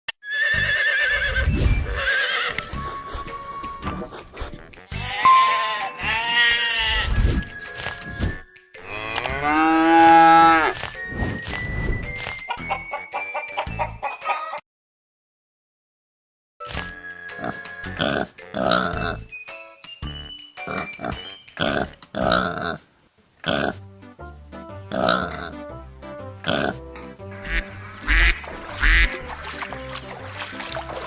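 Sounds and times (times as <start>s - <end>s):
farm animal calls: 5.0s - 7.2s, 12.5s - 14.6s, 26.5s - 29.2s
background music with steady beat: 7.4s - 14.5s, 16.6s - 21.8s.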